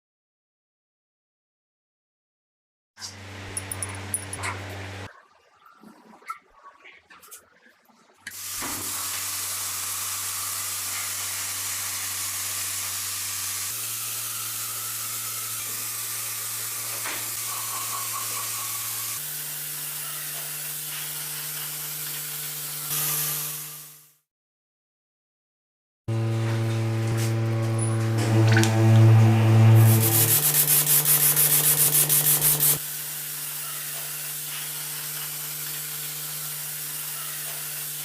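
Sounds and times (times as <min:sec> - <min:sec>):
high-pressure spray hiss: 0:08.4 - 0:19.2, 0:29.8 - 0:32.9, 0:33.9 - 0:38.0
machine humming: 0:26.1 - 0:32.8.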